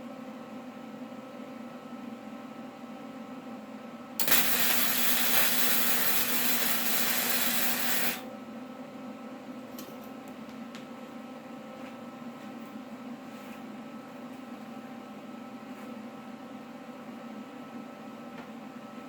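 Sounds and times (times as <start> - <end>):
welding arc sizzling: 4.2 - 8.2
steady hum: 4.2 - 8.4.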